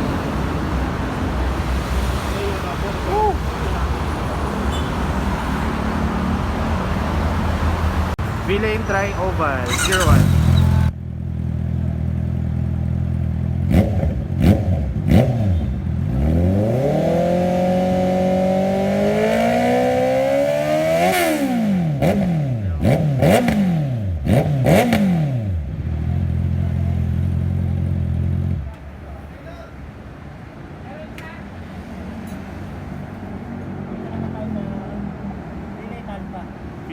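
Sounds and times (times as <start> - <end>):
motorcycle engine revving: 9.4 - 28.7.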